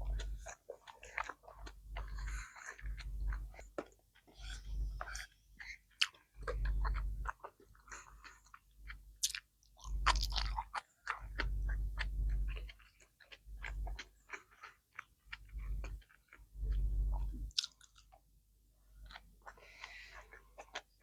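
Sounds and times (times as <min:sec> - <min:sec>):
low chewing thuds: 0:00.0 - 0:18.1
person chewing and biting food: 0:00.0 - 0:18.2
wet clicks and crunches: 0:17.5 - 0:18.1.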